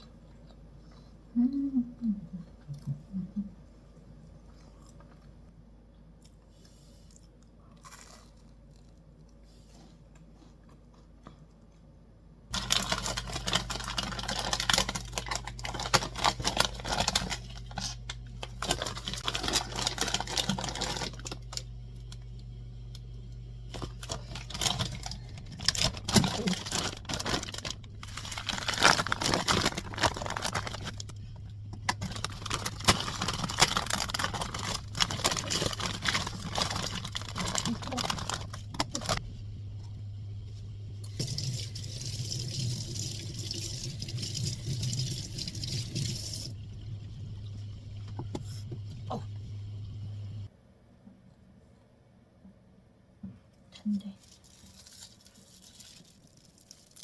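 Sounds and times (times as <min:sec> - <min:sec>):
steady low hum: 0:00.0 - 0:54.2
packaging crinkling and tearing: 0:12.5 - 0:22.2, 0:23.7 - 0:39.2, 0:54.2 - 0:57.0.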